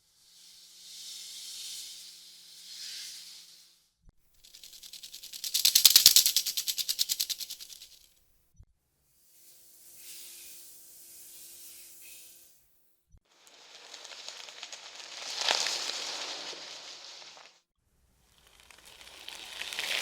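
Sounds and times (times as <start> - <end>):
snake hissing: 13.4 - 17.5, 18.5 - 20.0.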